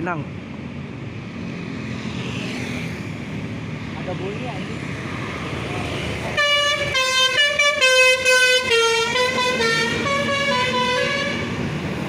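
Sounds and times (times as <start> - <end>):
bus horn playing quick tune: 6.4 - 11.4.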